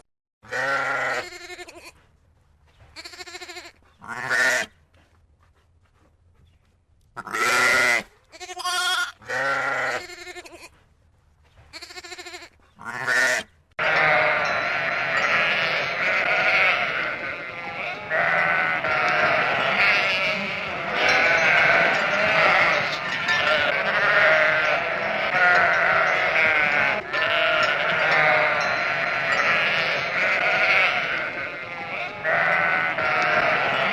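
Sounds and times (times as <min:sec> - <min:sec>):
goats bleating: 0:00.5 - 0:01.9, 0:07.2 - 0:10.7, 0:11.8 - 0:33.9.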